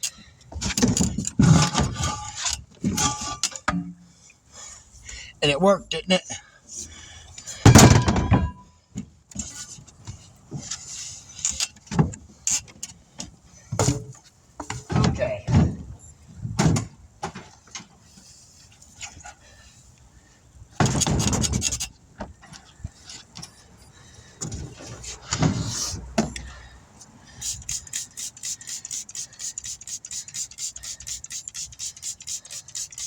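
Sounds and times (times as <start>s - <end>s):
fast even clicking: 27.4s - 33.0s.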